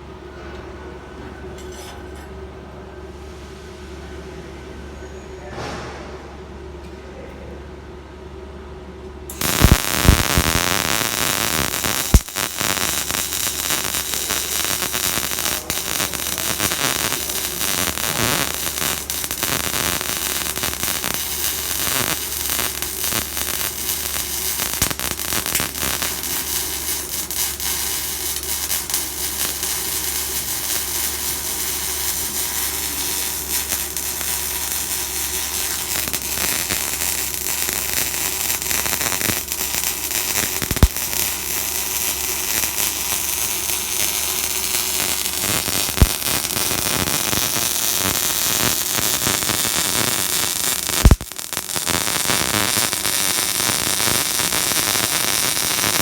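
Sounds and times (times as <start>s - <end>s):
arc welding crackling and hissing: 9.3s - 56.0s.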